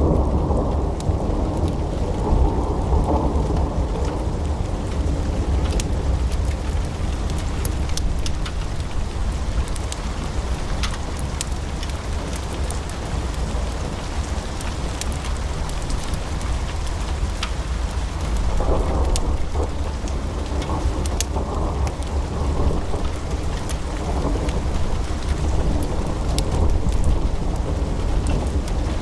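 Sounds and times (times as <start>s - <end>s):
burning logs crackling and popping: 0.0s - 29.0s
fire roaring: 0.0s - 29.0s.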